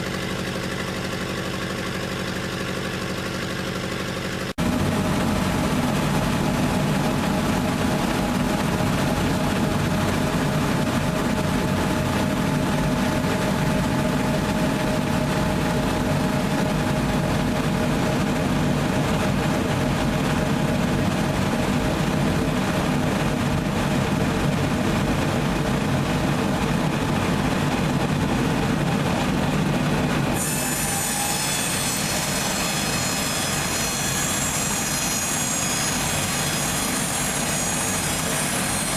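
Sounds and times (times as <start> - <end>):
diesel generator engine droning: 0.0 - 30.4
high whine: 4.6 - 30.3.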